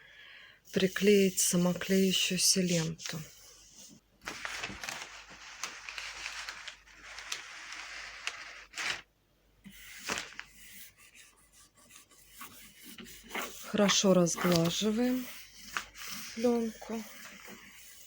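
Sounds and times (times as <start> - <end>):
plastic film rustling and crackling: 4.2 - 9.1, 9.8 - 10.6, 13.7 - 17.6
rubbing on film: 9.7 - 18.0.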